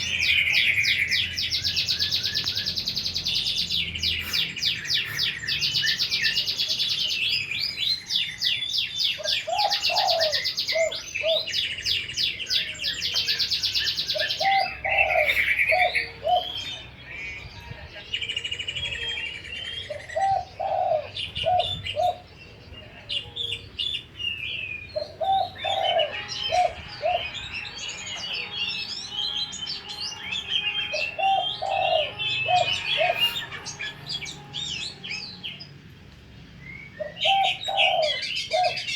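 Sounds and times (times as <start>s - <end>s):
small birds chirping and trilling: 0.0s - 38.9s
dove cooing: 9.2s - 11.6s, 14.1s - 16.8s, 19.8s - 22.3s, 24.9s - 35.4s, 37.0s - 38.9s.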